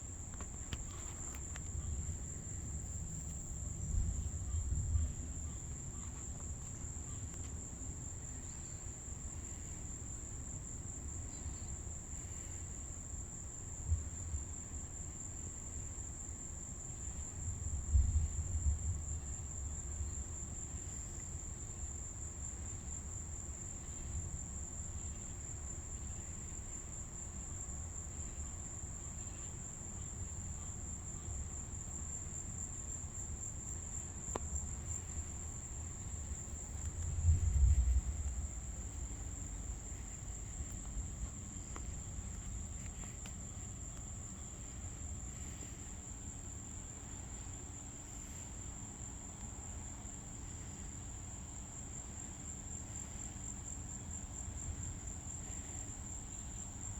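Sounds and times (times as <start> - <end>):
insects chirping: 0.0 - 56.9
low rumbles: 36.1 - 42.9.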